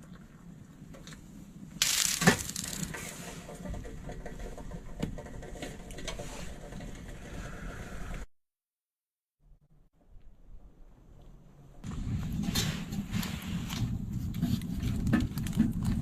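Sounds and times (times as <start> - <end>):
crunching and crackling: 1.8 - 3.0, 13.8 - 16.0.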